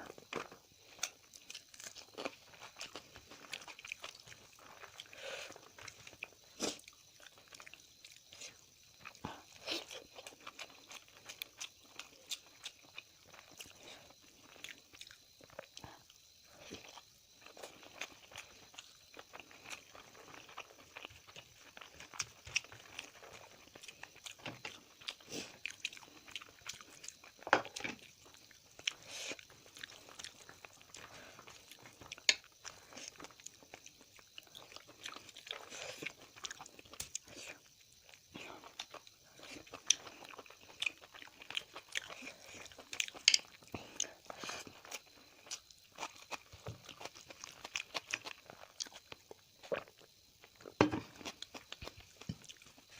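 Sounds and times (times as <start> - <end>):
person chewing and crunching: 0.0 - 52.9.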